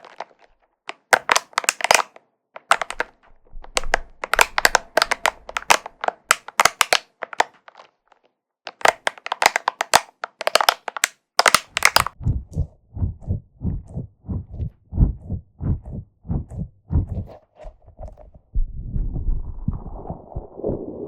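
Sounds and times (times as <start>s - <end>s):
spiky ball crackling clicks: 0.0s - 7.9s, 8.7s - 12.7s.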